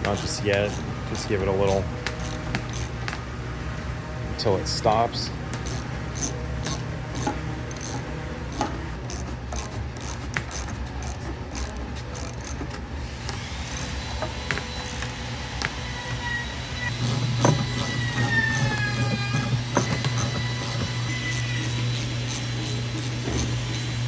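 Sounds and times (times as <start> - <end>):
quiet background music: 0.0 - 24.0
ratchet wrench clicking: 0.2 - 1.3, 2.2 - 2.9, 5.6 - 12.8, 13.6 - 14.1, 14.8 - 15.7, 19.8 - 24.0.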